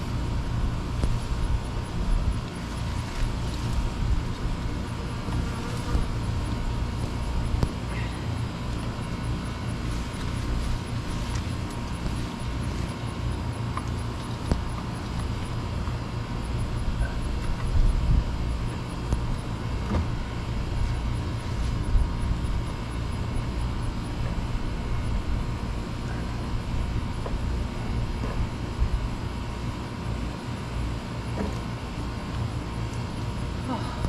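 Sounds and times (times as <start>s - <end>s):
faint knocks and rustles of plants: 0.9s - 16.5s, 17.1s - 22.8s
wind on microphone: 17.0s - 18.5s.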